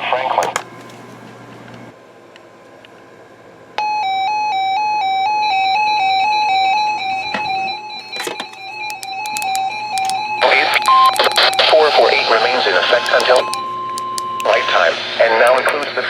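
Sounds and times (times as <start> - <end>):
static crackling clicks: 8.9 - 12.1, 13.1 - 14.6.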